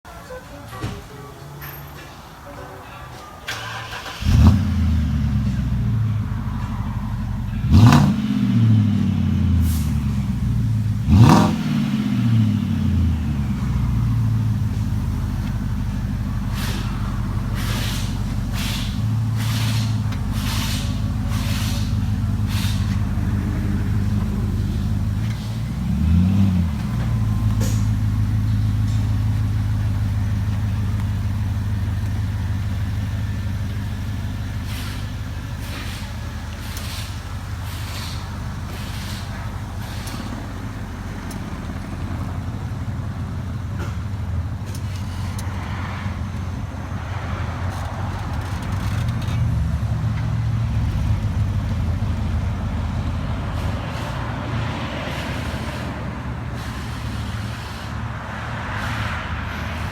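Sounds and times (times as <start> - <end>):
car exhaust drone: 2.5 - 59.9.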